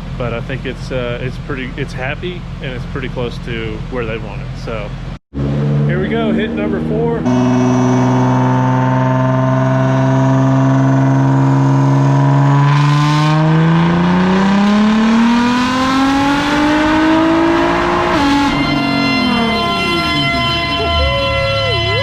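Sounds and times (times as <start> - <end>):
car engine revving on dyno: 5.3 - 22.0.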